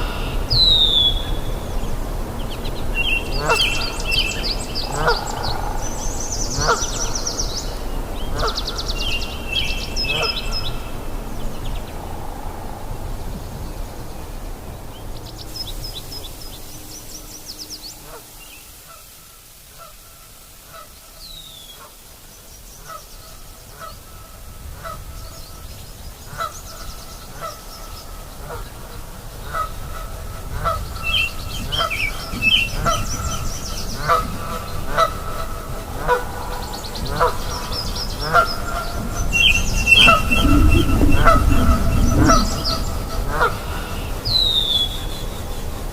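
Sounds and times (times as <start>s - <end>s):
river rushing: 1.5s - 13.4s, 38.9s - 45.9s
small birds chirping: 2.4s - 10.7s, 36.6s - 45.5s
bird honking calls: 3.2s - 7.4s, 34.1s - 44.7s.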